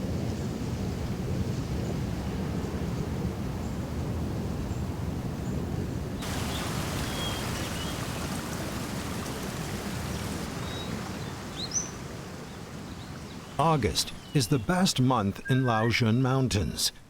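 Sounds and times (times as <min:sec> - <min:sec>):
steady rain: 0:00.0 - 0:15.0
high bird chirps: 0:15.4 - 0:16.1.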